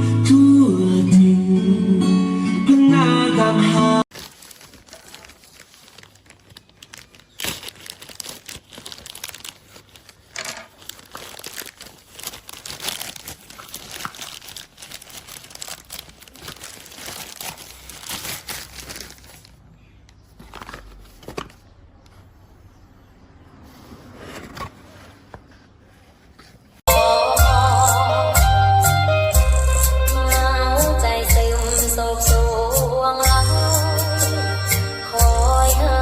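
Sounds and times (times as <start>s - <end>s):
packaging tearing: 4.1s - 19.6s
packaging crinkling and rustling: 4.1s - 21.7s.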